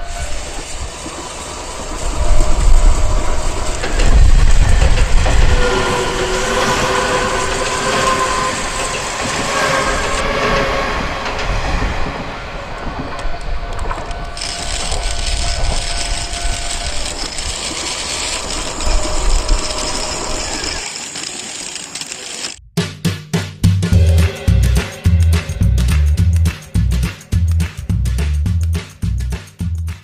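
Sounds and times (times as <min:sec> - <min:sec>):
train rolling on rails: 0:00.0 - 0:22.6.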